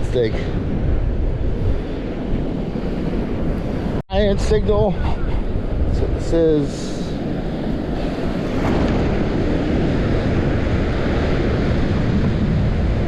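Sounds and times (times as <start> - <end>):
wind buffeting microphone: 0.0 - 13.0
surf washing: 5.0 - 13.0.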